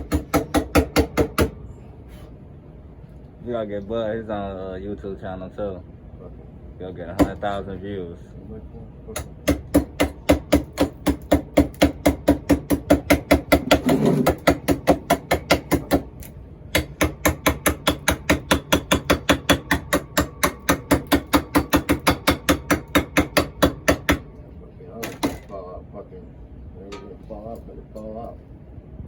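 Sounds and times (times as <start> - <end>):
hammer beating on metal: 9.2 - 16.1, 16.7 - 24.3.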